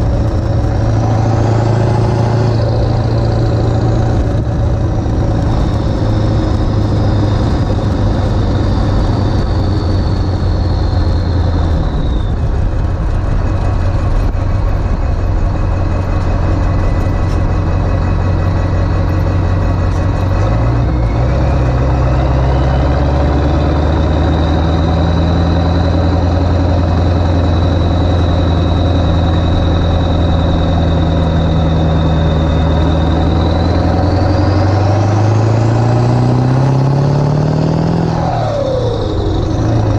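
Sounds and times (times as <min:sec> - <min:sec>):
diesel engine driving: 0:00.0 - 0:39.9
turbo whistle: 0:27.2 - 0:34.6.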